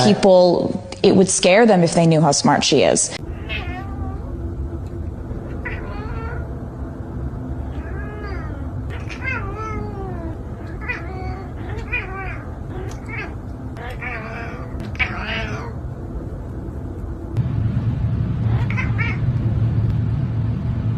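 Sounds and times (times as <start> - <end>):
steady low hum: 0.0 - 20.9
cat meowing: 3.2 - 4.4, 5.5 - 6.6, 7.6 - 15.8, 18.5 - 19.2.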